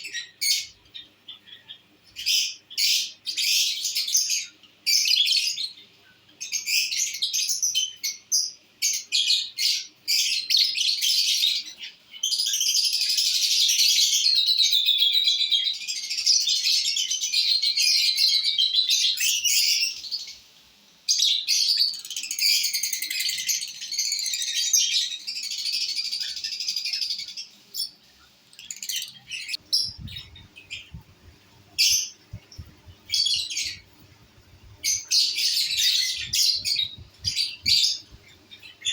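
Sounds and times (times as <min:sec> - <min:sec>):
lovebirds chirping: 0:21.1 - 0:38.9
faint low thuds: 0:29.7 - 0:38.4.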